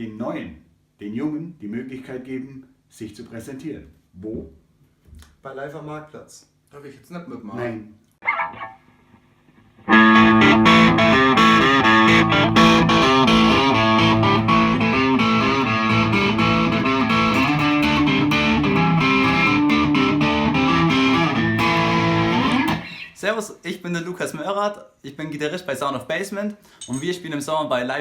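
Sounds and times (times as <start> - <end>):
rock music with distorted guitar: 8.2 - 8.8, 9.7 - 23.1.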